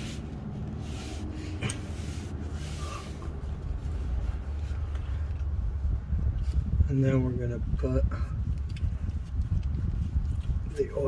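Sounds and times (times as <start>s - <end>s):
cloth rag rubbing: 0.0s - 5.3s
low rumble: 0.0s - 11.0s.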